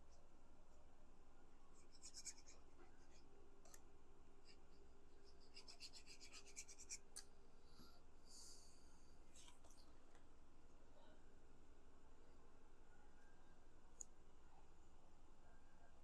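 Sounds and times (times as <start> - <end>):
cardstock rubbing and scratching: 5.4 - 7.1.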